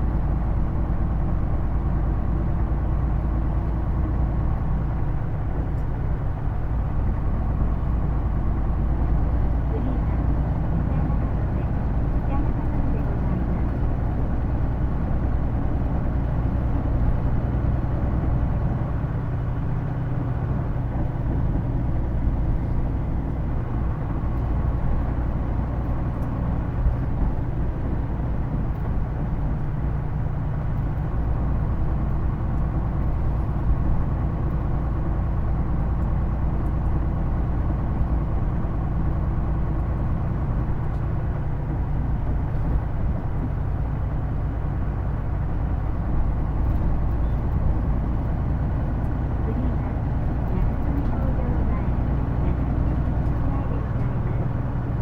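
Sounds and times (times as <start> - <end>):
bus engine drone: 0.0 - 55.0.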